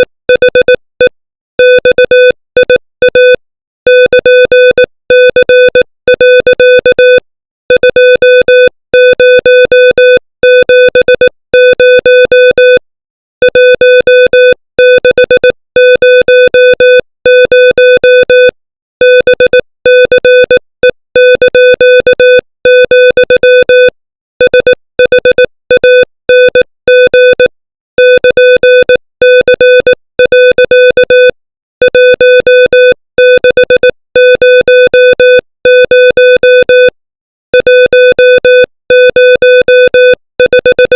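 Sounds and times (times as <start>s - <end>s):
morse code beeps: 0.0s - 0.8s, 1.6s - 12.8s, 13.4s - 40.9s.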